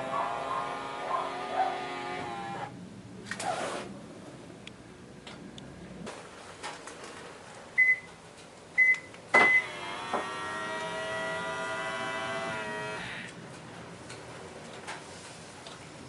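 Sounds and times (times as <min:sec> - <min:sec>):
mirror folding motor whining: 0:00.0 - 0:02.7, 0:09.6 - 0:13.3.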